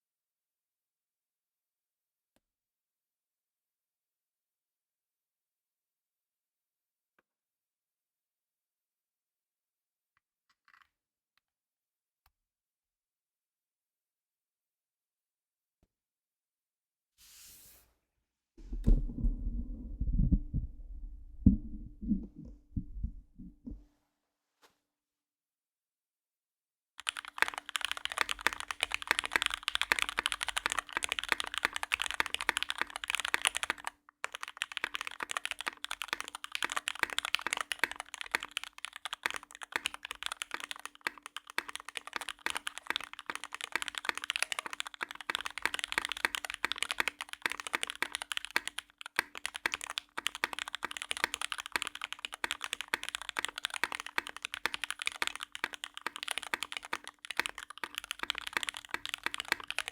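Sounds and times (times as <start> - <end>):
fast typing on mechanical keyboard: 27.0 - 59.9.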